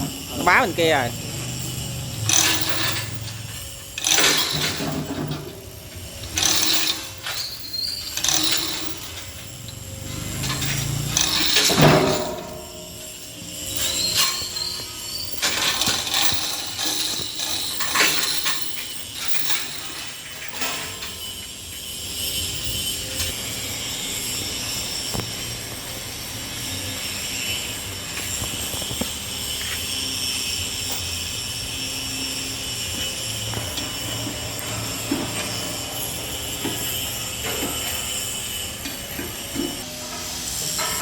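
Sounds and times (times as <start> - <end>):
machine with high whine: 0.0 - 41.0.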